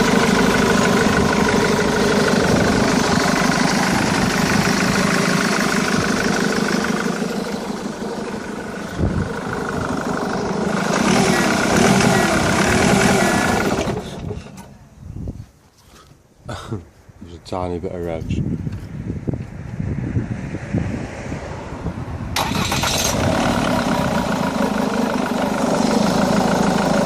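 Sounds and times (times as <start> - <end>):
engine knock: 0.0 - 7.2, 23.2 - 27.0
car engine idling: 0.0 - 15.0, 22.4 - 27.0.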